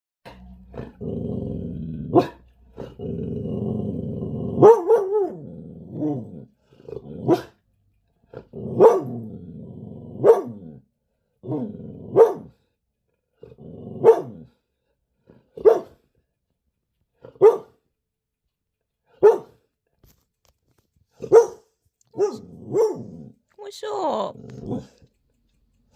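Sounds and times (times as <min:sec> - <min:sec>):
dog growling: 0:00.3 - 0:12.5, 0:13.2 - 0:15.6, 0:22.1 - 0:23.5, 0:24.1 - 0:25.1
dog barking: 0:02.1 - 0:02.4, 0:04.5 - 0:06.3, 0:07.2 - 0:07.6, 0:08.7 - 0:09.3, 0:10.2 - 0:10.7, 0:11.5 - 0:12.5, 0:14.0 - 0:14.4, 0:15.6 - 0:16.0, 0:17.3 - 0:17.8, 0:19.2 - 0:19.6, 0:21.2 - 0:23.3.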